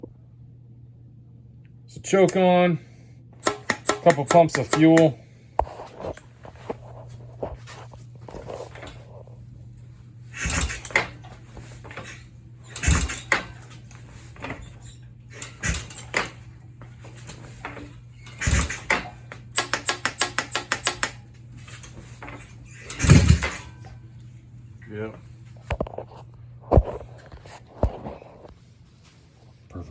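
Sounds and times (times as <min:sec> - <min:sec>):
motorcycle engine kicked over: 0:12.8 - 0:13.7, 0:23.0 - 0:23.7.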